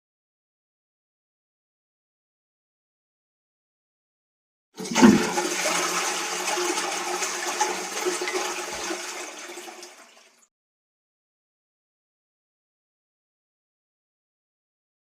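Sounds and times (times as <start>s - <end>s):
rushing water: 4.8s - 10.4s.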